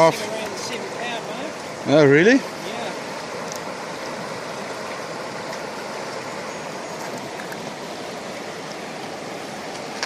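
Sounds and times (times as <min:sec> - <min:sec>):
river rushing: 0:00.0 - 0:10.0.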